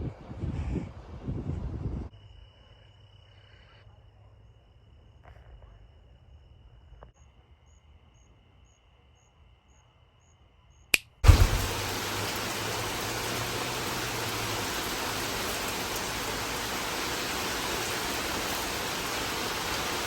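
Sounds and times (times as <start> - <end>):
loud rush of noise: 11.2 - 20.0.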